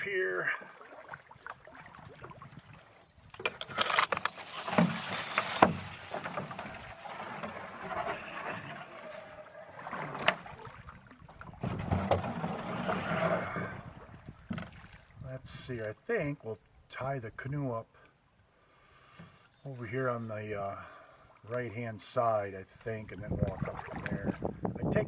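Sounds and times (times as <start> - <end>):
knocks and clunks on canoe: 0.0 - 15.2, 22.8 - 25.0
paddle strokes in water: 0.0 - 15.2, 22.7 - 24.7.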